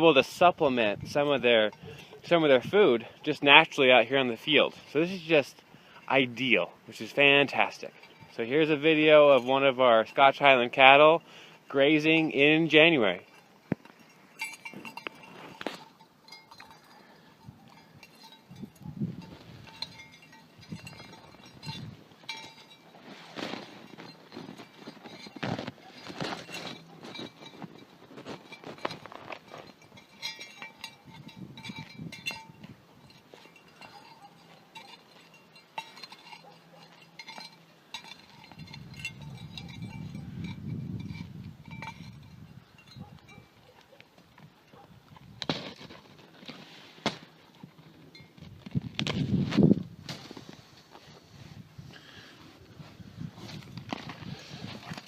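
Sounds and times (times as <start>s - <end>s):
cow crunching snow while grazing: 3.8s - 55.0s
cow digging through snow: 18.0s - 30.6s, 49.0s - 55.0s.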